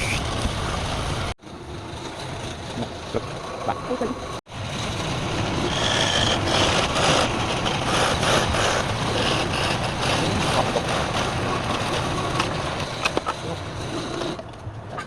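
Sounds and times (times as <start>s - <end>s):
wood lathe running: 5.5s - 11.8s
turning tool scraping wood: 5.6s - 12.5s.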